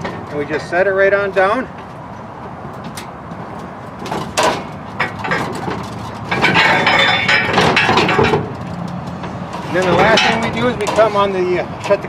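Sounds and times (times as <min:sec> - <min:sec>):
metallic clatter: 0:04.0 - 0:12.0.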